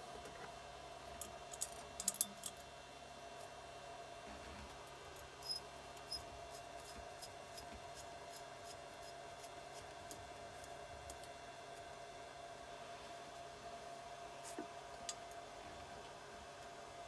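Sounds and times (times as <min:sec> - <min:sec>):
small metallic clicks and taps: 0:01.2 - 0:02.6.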